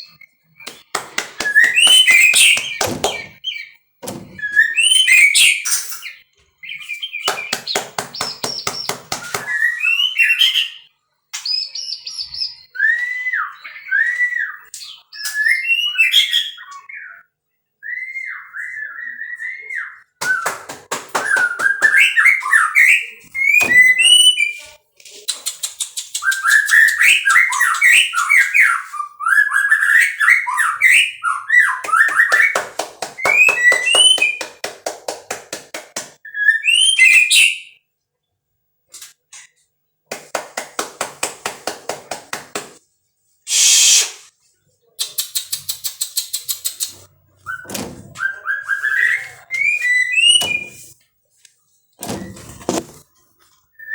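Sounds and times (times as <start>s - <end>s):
bird singing whistled phrases: 0.0s - 3.8s, 4.4s - 7.5s, 8.3s - 20.4s, 43.5s - 44.2s, 47.5s - 50.8s
bird harsh hiss: 43.5s - 44.3s.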